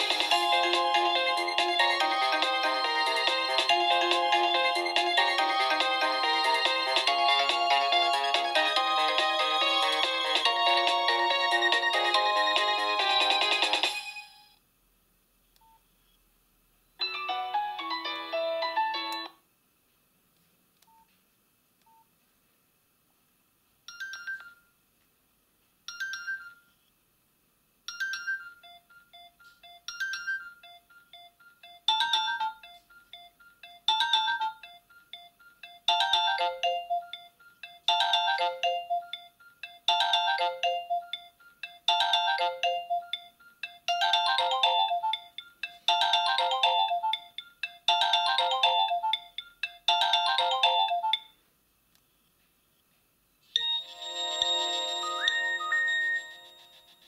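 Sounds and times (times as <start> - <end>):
polyphonic phone ringtones: 0.0 - 14.4, 27.9 - 47.3, 47.9 - 51.3, 53.6 - 57.0.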